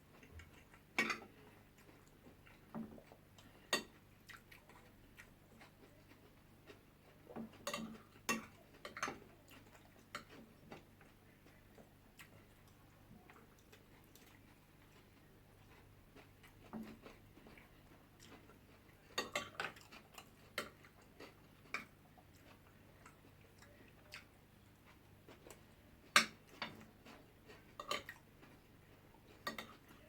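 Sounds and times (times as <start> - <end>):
cutlery tapping plates: 7.4 - 9.2, 19.2 - 19.8, 26.2 - 26.8, 27.8 - 28.2, 29.4 - 30.0.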